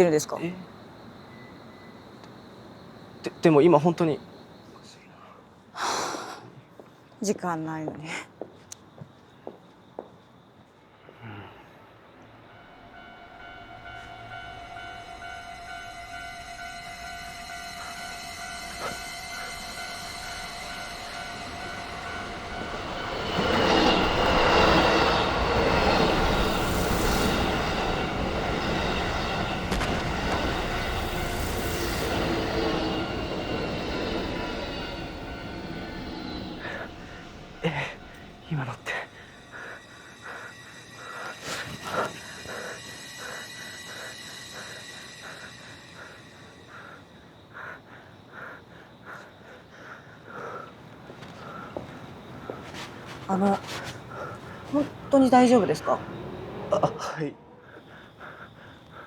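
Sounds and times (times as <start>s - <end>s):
train passing: 0.0s - 5.7s, 9.5s - 59.0s
steady high tones: 12.2s - 48.0s
crossing warning bell: 12.3s - 48.3s, 50.4s - 56.8s.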